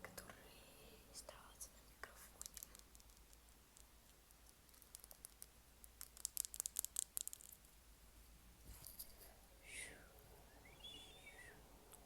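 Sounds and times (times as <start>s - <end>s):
crisp asmr clicking: 2.0s - 7.7s.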